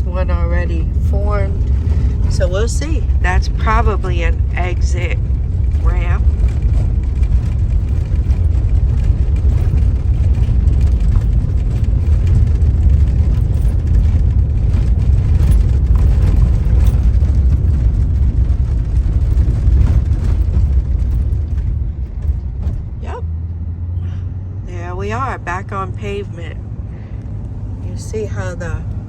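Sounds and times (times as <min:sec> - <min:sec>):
tyres rumbling on rough road: 0:00.0 - 0:29.0
small knocks and rattles: 0:05.2 - 0:23.0.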